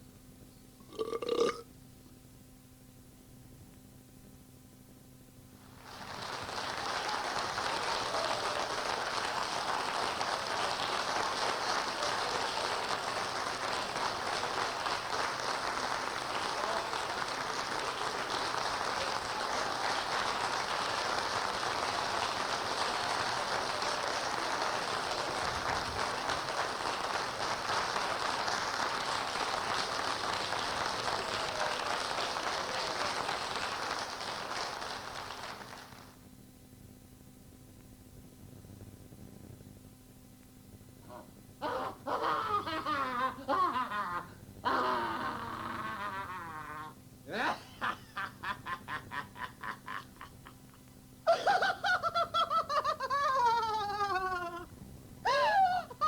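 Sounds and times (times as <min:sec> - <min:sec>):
large audience clapping: 0:05.6 - 0:36.2, 0:47.6 - 0:54.6, 0:55.3 - 0:56.0.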